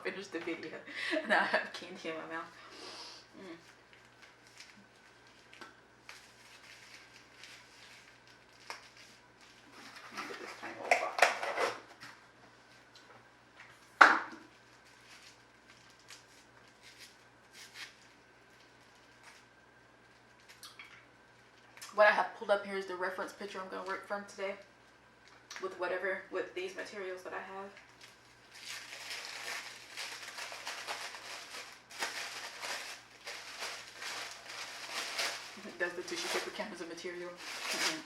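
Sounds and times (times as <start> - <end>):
tissue paper rustling and crinkling: 3.9 - 10.6, 14.5 - 19.4, 28.0 - 38.0.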